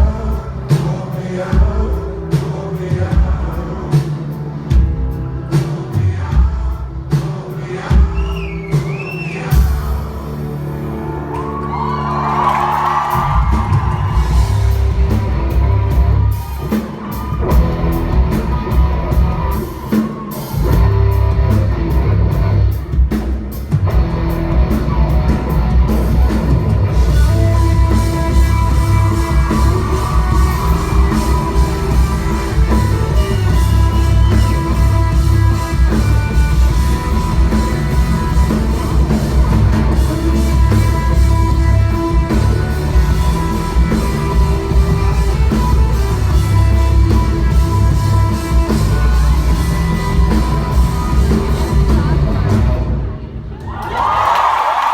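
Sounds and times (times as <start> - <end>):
live band playing: 0.0 - 53.5.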